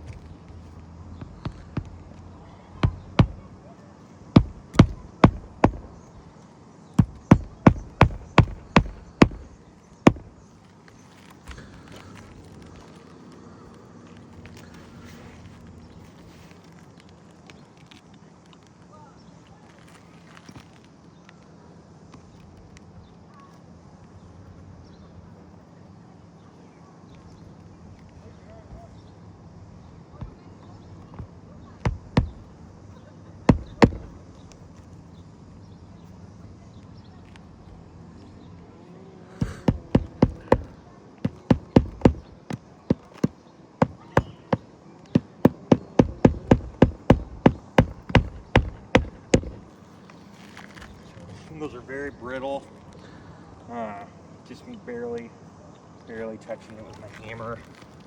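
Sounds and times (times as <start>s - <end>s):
steady low hum: 0.0s - 10.6s
hammer tapping on roof shingle: 1.2s - 3.6s, 4.3s - 6.2s, 7.0s - 10.5s, 11.4s - 12.2s, 30.2s - 32.6s, 33.5s - 34.4s, 39.4s - 49.8s.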